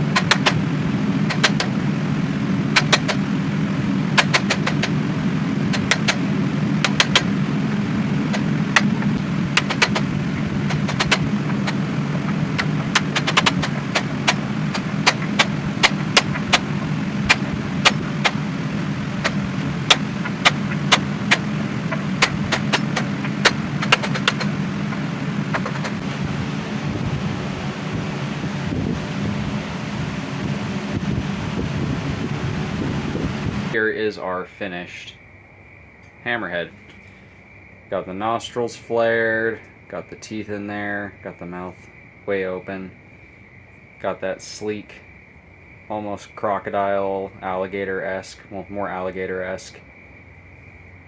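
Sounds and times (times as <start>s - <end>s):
steady low roar: 0.0s - 33.8s.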